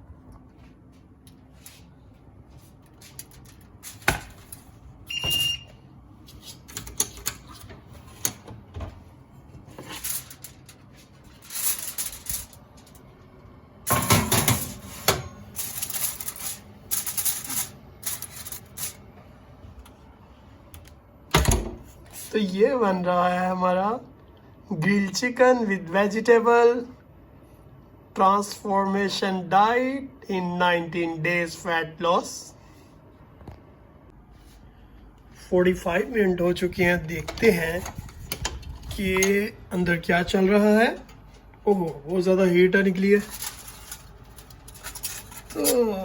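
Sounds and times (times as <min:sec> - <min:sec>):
high electronic beep: 0:05.1 - 0:05.7.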